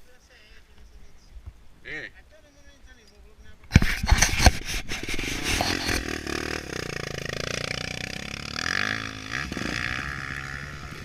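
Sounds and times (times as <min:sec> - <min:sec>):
dirt bike engine running and revving: 0:04.6 - 0:11.0.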